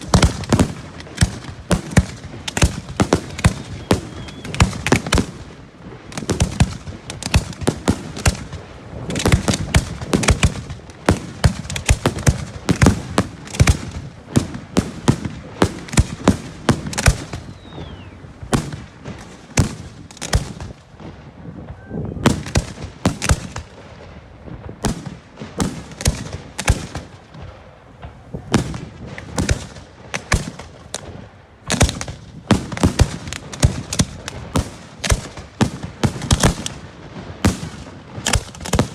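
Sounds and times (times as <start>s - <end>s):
fireworks bursts and crackling: 0.0s - 38.9s
rising whistle: 3.3s - 4.6s, 17.5s - 18.2s.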